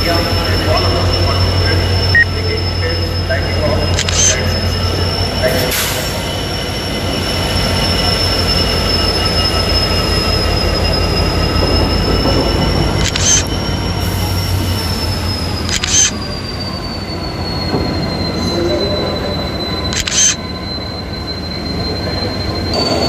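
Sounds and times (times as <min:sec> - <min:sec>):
locomotive engine hum: 0:00.0 - 0:16.9, 0:19.5 - 0:23.0
train wheel squeal: 0:00.0 - 0:23.0
camera clicks: 0:13.0 - 0:13.4, 0:15.7 - 0:16.1, 0:20.0 - 0:20.4.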